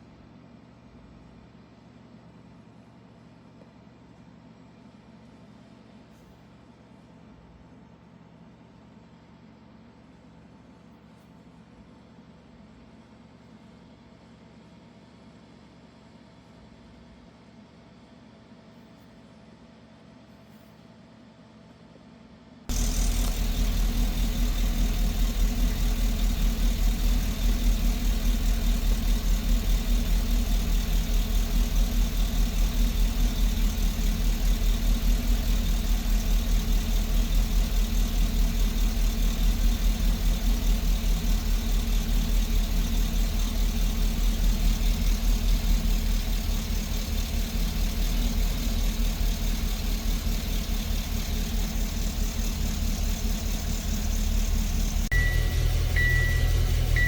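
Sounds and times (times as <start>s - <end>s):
truck engine idling: 22.7s - 57.0s.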